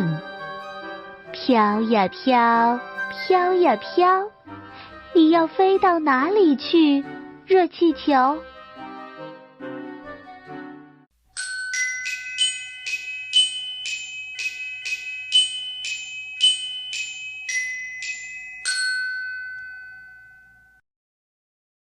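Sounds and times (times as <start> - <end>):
glockenspiel melody: 0.0 - 7.0, 11.3 - 20.8.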